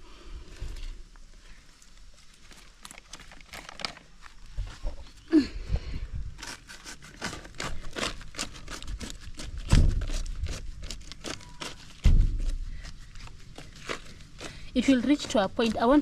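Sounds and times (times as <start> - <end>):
plants rustling and tearing: 0.6 - 5.5, 6.4 - 16.0
dull thumps: 9.4 - 10.7, 11.9 - 16.0.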